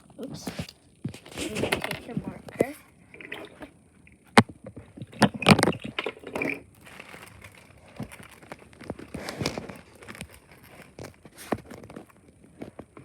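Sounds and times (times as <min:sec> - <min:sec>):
paper crinkling: 0:04.8 - 0:13.0.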